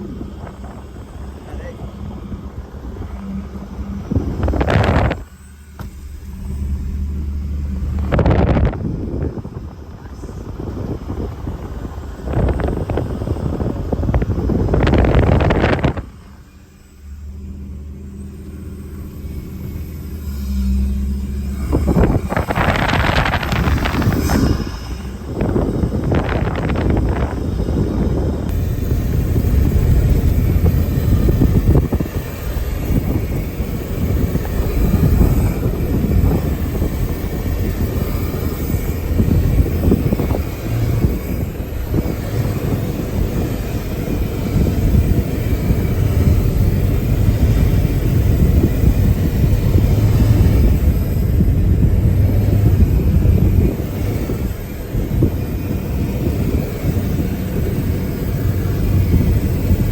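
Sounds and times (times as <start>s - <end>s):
vehicle driving rumble: 0.0s - 59.9s.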